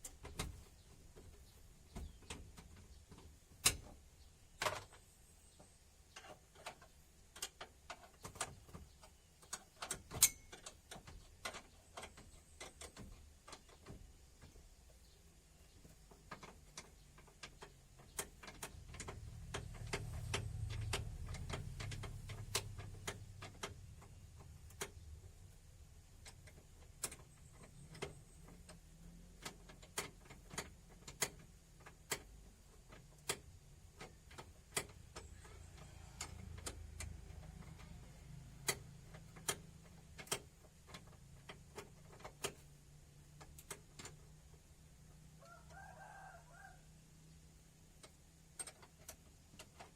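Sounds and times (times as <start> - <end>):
hand tools clicking and tapping: 15.7 - 25.4.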